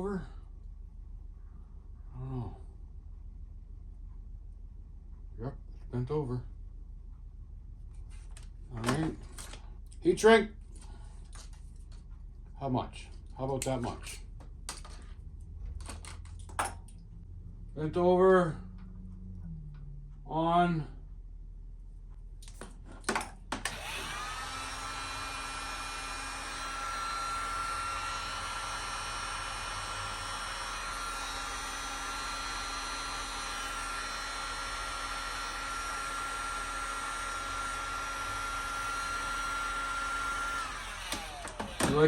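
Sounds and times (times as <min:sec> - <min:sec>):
heat gun fan whining: 0:08.0 - 0:17.0, 0:22.4 - 0:42.0.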